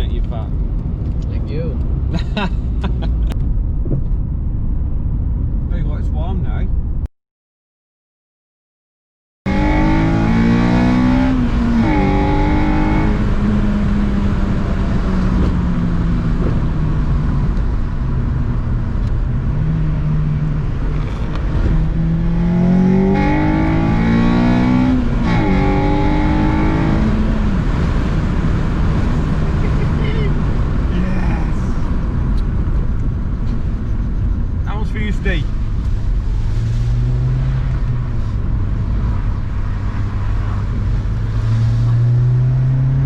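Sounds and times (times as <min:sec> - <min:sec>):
vehicle engine accelerating: 0:09.5 - 0:43.0.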